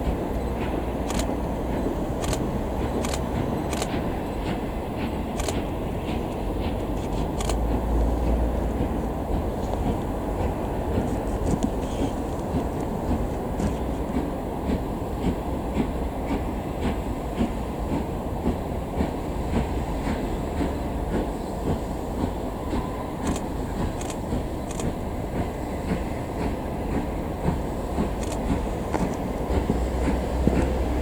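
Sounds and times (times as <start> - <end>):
train rumbling past: 0.0 - 31.0
wheels clicking over rail joints: 0.0 - 31.0.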